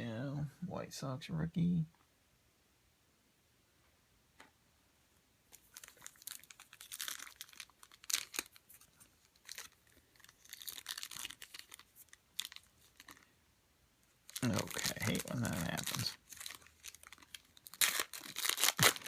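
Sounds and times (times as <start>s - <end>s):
plastic wrapper crinkling and tearing: 5.5s - 13.4s, 14.0s - 19.0s.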